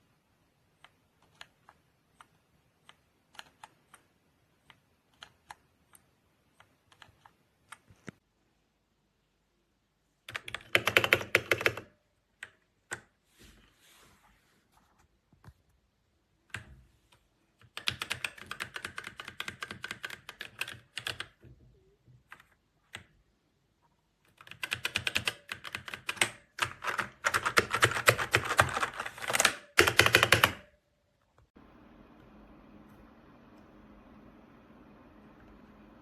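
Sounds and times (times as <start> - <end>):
mechanical keyboard typing: 0.7 - 8.2, 10.2 - 13.2, 16.4 - 21.4, 24.2 - 30.8.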